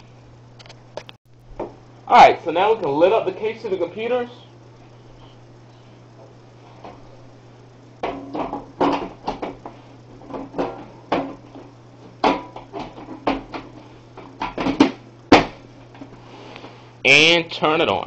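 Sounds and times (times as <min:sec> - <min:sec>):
faint steady hum: 0:00.0 - 0:18.0
computer case knocks and clatters: 0:08.0 - 0:15.7.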